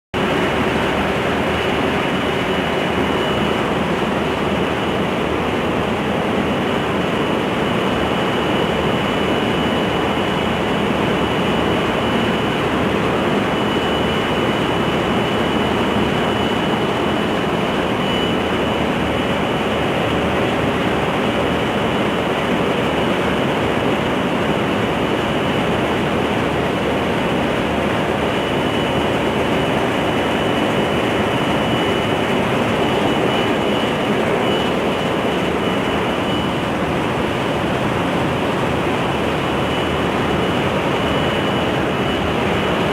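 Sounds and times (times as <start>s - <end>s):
engine room machinery din: 0.2s - 42.9s
high-pitched whine: 0.2s - 42.9s.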